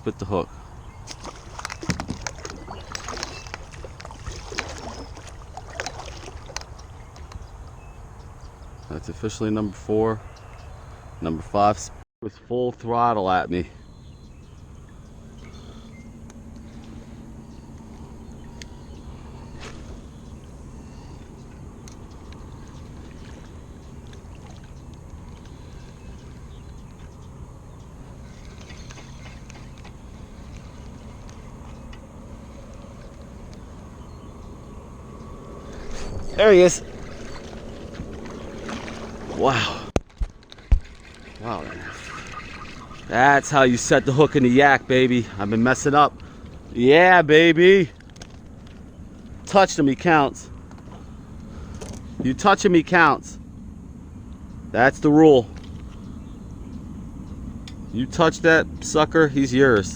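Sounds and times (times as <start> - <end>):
gear clicks and knocks: 1.0 - 7.5, 35.2 - 41.5, 47.9 - 49.5, 50.6 - 52.3
steady low rumble: 13.3 - 59.9.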